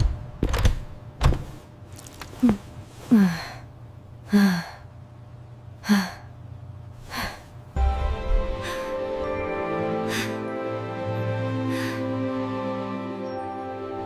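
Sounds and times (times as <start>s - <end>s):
person sighing breathily: 2.4s - 3.7s.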